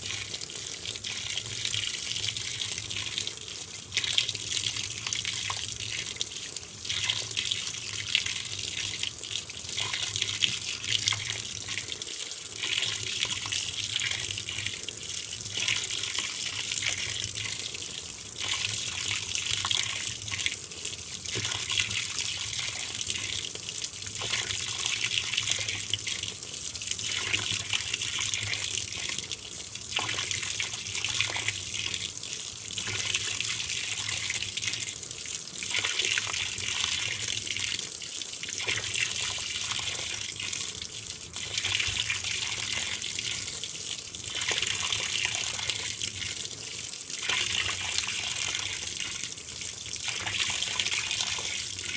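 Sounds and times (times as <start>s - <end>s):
water pouring into washer tub: 47.2s - 51.9s.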